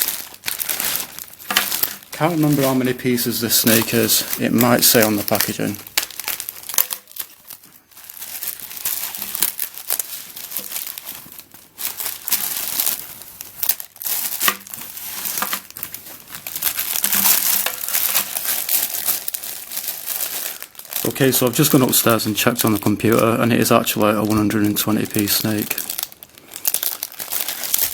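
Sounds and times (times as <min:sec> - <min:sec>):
packaging crinkling: 0:00.0 - 0:27.9.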